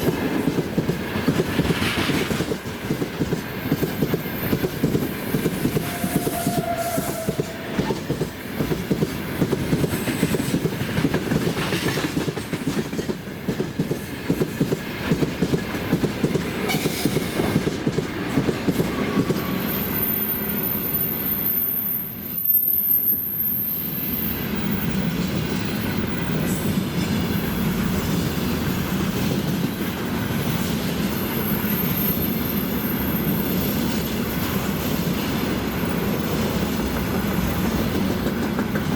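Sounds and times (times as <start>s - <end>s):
train wheels clattering: 0.0s - 19.9s, 33.5s - 38.9s
train rolling rumble: 0.0s - 21.0s, 24.1s - 38.9s
high wheel squeal: 19.4s - 24.5s.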